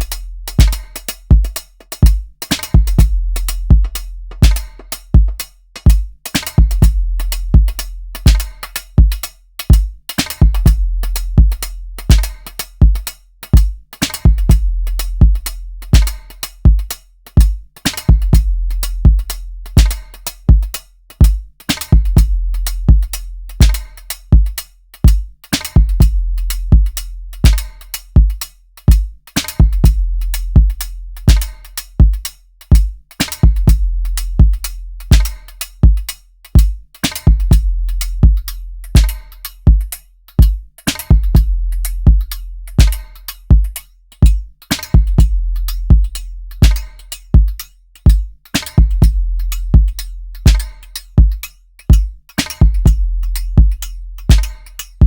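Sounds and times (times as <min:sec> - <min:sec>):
drum machine beat: 0:00.0 - 0:55.0
hi-hat hits: 0:00.0 - 0:55.0
deep kick drum hits: 0:02.8 - 0:04.6, 0:07.6 - 0:08.4, 0:10.4 - 0:13.0, 0:40.4 - 0:43.7, 0:45.0 - 0:46.8, 0:48.1 - 0:50.6, 0:53.6 - 0:54.5
deep bass kicks: 0:02.8 - 0:05.3, 0:06.6 - 0:08.5, 0:10.4 - 0:12.3, 0:14.3 - 0:16.2, 0:18.1 - 0:19.9, 0:22.0 - 0:23.2, 0:25.8 - 0:27.0, 0:29.6 - 0:31.4, 0:33.4 - 0:35.3, 0:37.3 - 0:38.4, 0:41.1 - 0:43.6, 0:45.0 - 0:46.8, 0:48.8 - 0:54.5.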